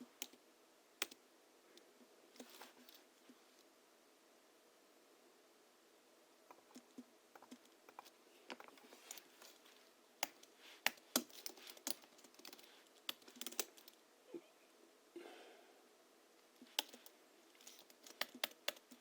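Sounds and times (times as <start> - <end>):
keyboard typing: 16.7 - 17.1, 17.7 - 19.0.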